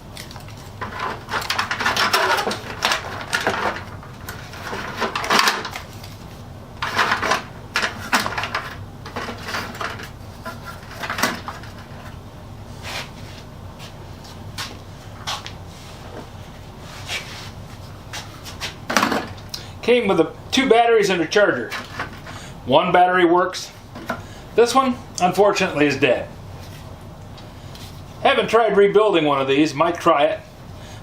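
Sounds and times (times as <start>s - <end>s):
hard objects clicking and knocking: 0.2s - 5.9s, 6.8s - 12.2s, 18.9s - 19.4s.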